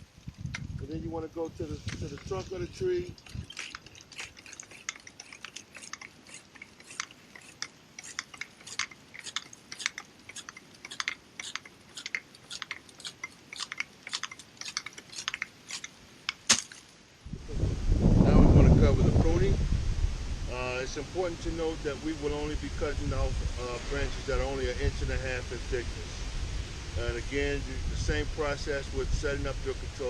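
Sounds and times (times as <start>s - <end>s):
pruning saw cutting branch: 1.6s - 16.9s.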